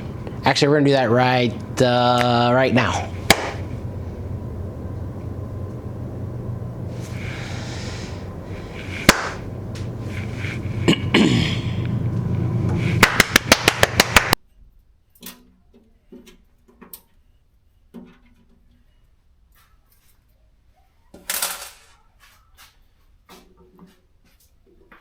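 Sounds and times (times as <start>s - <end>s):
steady hum: 0.0s - 14.4s.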